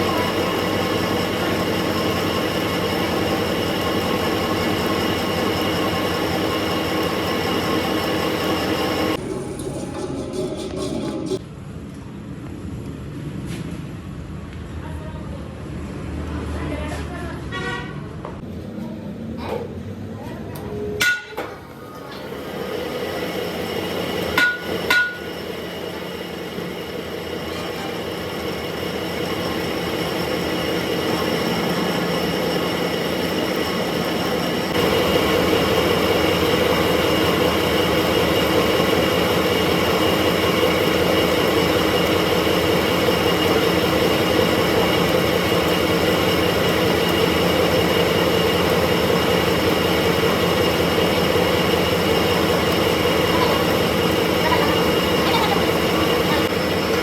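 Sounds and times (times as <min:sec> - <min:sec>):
metal lathe humming: 0:00.0 - 0:11.4, 0:22.0 - 0:57.0
sharp metal knocks: 0:21.0 - 0:21.6, 0:24.4 - 0:25.3.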